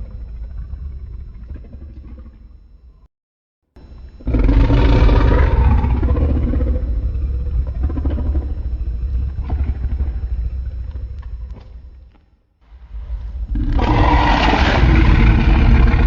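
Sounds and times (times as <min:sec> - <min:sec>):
heavy bass rumble: 0:03.8 - 0:12.1
monster roar: 0:04.2 - 0:07.0, 0:13.4 - 0:16.0.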